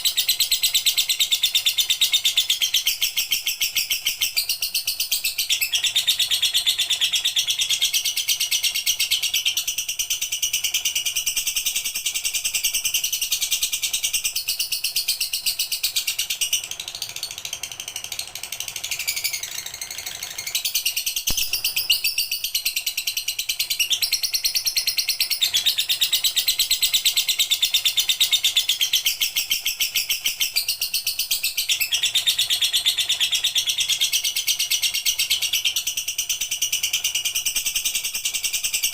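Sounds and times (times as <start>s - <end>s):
lovebird chattering song: 0.0s - 38.9s.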